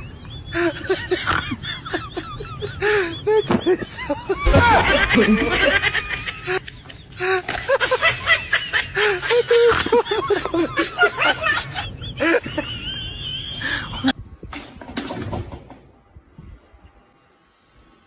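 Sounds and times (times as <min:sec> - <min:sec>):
people laughing and talking: 0:00.0 - 0:14.2.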